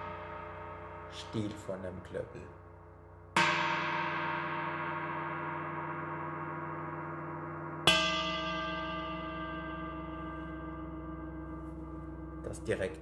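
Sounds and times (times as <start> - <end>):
gong struck with wooden handle: 2.6 - 12.6.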